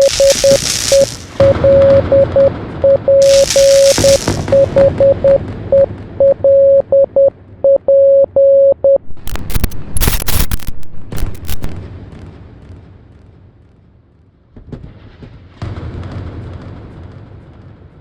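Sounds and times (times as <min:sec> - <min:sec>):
morse code beeps: 0:00.0 - 0:10.6
gunfire-like cracks and blasts: 0:03.2 - 0:04.8.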